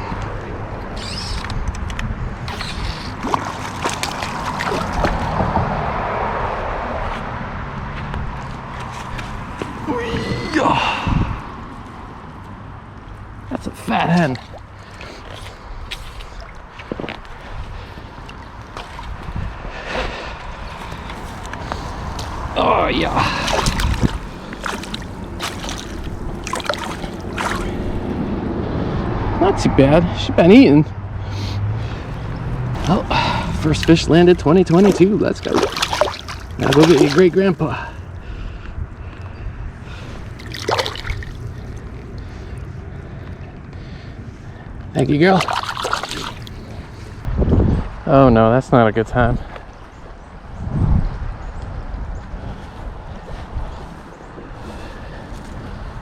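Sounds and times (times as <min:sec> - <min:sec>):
wind on microphone: 0:00.0 - 0:12.1, 0:15.6 - 0:29.4, 0:46.5 - 0:48.4, 0:49.4 - 0:56.0
splashes and clicks: 0:01.0 - 0:05.6, 0:14.1 - 0:19.4, 0:23.1 - 0:28.1, 0:32.8 - 0:37.6, 0:40.3 - 0:42.3, 0:45.3 - 0:46.9
rushing river water: 0:02.4 - 0:06.4, 0:13.4 - 0:19.4, 0:20.0 - 0:28.3, 0:32.0 - 0:38.2, 0:40.0 - 0:43.0, 0:45.0 - 0:47.3.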